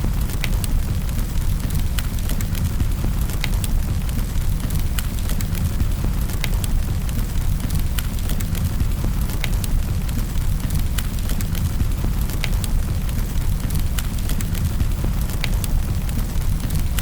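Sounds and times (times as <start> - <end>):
wood fire crackling and popping: 0.0 - 17.0.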